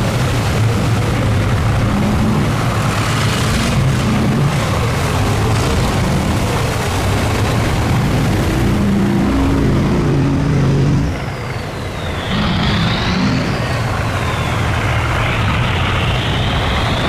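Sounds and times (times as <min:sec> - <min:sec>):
boat engines running: 0:00.0 - 0:17.0
faint high whine: 0:00.0 - 0:17.0.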